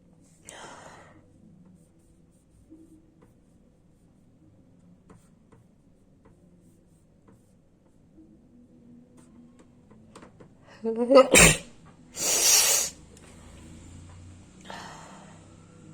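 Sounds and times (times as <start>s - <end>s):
short breathy hiss: 12.2s - 13.0s.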